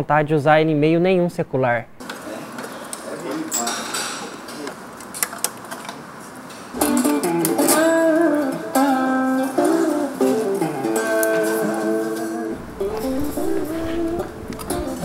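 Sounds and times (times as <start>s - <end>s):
guitar music: 6.8s - 15.0s.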